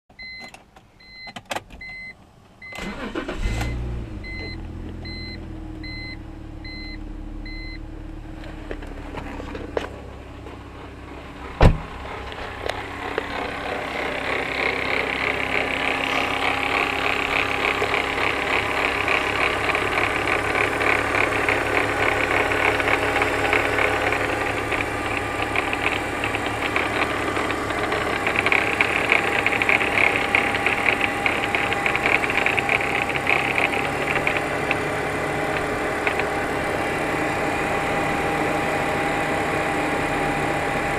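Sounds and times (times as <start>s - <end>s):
in-car chime beeping: 0.2s - 7.9s
car engine starting and idling: 0.2s - 40.9s
thump: 11.6s - 12.0s
fast-ticking buzz from engine: 12.6s - 39.3s.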